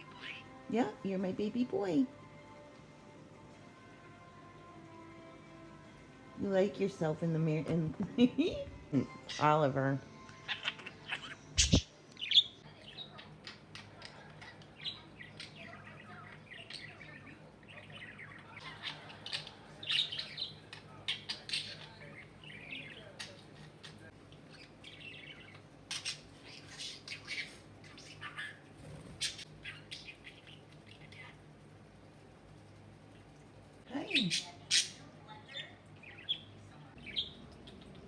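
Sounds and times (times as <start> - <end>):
budgerigar chattering: 34.0 - 36.4.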